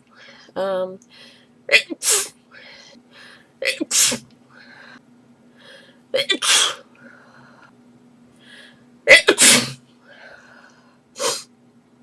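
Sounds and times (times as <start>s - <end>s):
faint breathing: 0.0s - 1.6s, 2.5s - 3.6s, 4.5s - 6.1s, 6.9s - 8.9s, 10.0s - 11.1s
girl sneezing: 1.7s - 2.4s, 3.6s - 4.2s, 6.2s - 6.8s, 9.1s - 9.8s.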